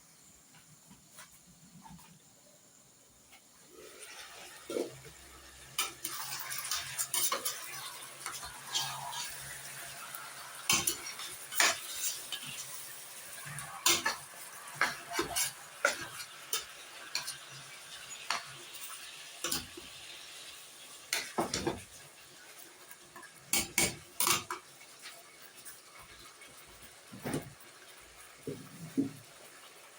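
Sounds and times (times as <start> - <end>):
food sizzling in pot: 3.2 - 29.9
utensil scraping cooking pot: 5.8 - 9.9, 10.6 - 19.7.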